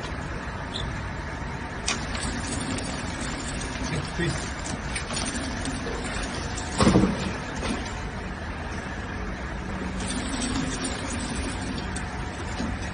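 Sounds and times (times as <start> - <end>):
packing machine running: 1.6 - 12.9
loud mechanical knock: 6.7 - 7.3.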